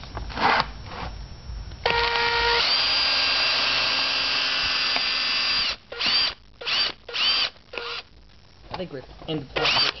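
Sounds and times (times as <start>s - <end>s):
electric drill whining: 1.8s - 8.1s, 9.6s - 10.0s.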